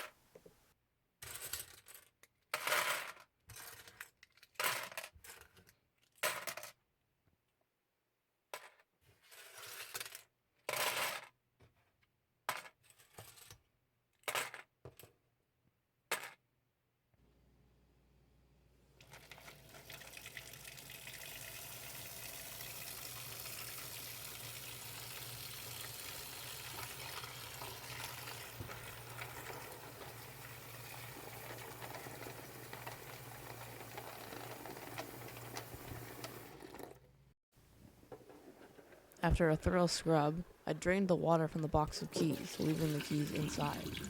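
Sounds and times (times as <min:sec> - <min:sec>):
tap water running into container: 0:19.0 - 0:37.2, 0:42.0 - 0:44.0.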